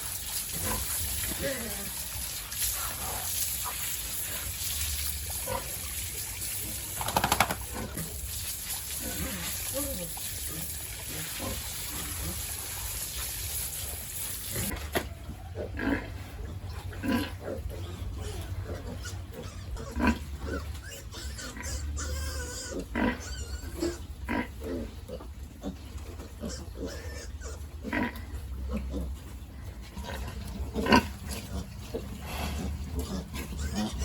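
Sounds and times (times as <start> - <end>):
pigs grunting: 8.9 - 12.6, 14.5 - 34.0
pig squealing: 17.1 - 24.6, 26.4 - 28.2, 32.3 - 34.0.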